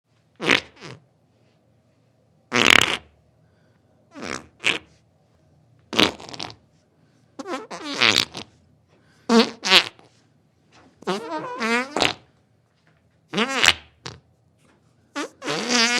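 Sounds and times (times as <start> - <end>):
farts: 0.4 - 1.0, 2.5 - 3.1, 4.1 - 4.9, 5.9 - 6.6, 7.4 - 8.5, 9.3 - 10.1, 10.8 - 12.3, 13.3 - 14.2, 15.1 - 15.9.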